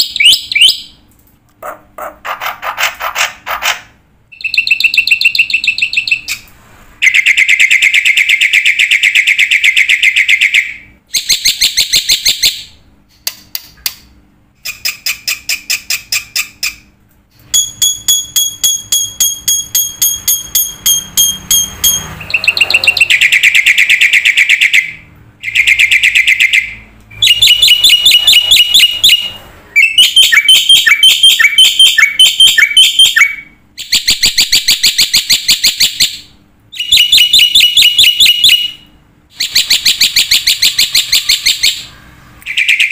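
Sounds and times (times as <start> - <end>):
bird trilling: 18.4 - 38.8, 39.4 - 42.9.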